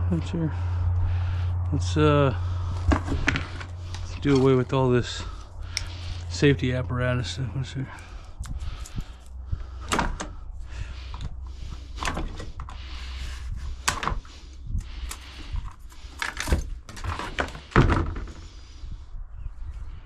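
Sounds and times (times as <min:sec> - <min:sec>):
low steady rumble: 0:00.0 - 0:20.0
hardware and packaging clattering: 0:02.6 - 0:06.0, 0:15.0 - 0:18.3.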